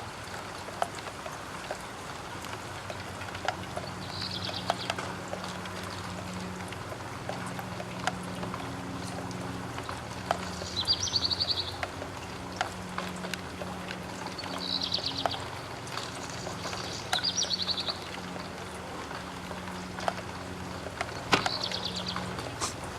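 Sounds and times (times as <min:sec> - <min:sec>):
raindrops ticking on window: 0:00.0 - 0:22.9.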